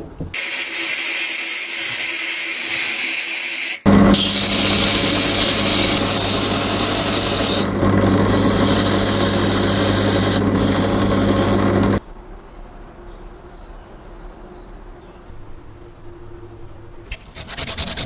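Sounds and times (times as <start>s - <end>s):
power tool abrading metal: 0.4s - 12.0s.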